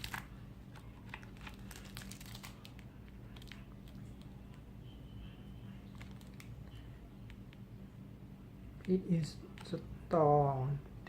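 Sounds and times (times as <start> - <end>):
packaging crinkling and rustling: 0.0 - 4.3, 5.9 - 6.6
steady low hum: 0.0 - 11.0.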